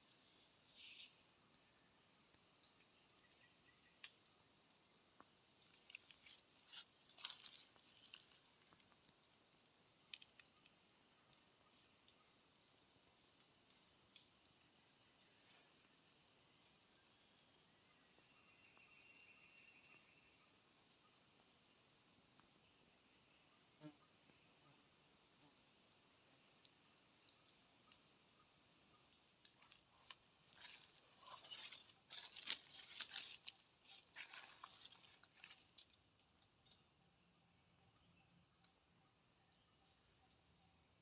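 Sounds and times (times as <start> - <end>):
crickets chirping: 0.0 - 41.0
rustles and clicks: 29.5 - 36.8.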